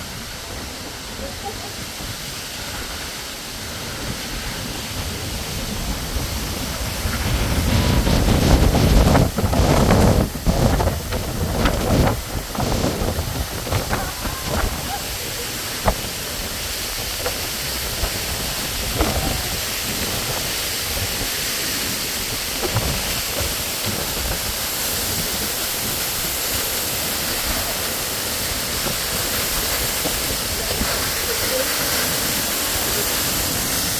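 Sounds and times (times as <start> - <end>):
waterfall rushing: 0.0 - 33.9.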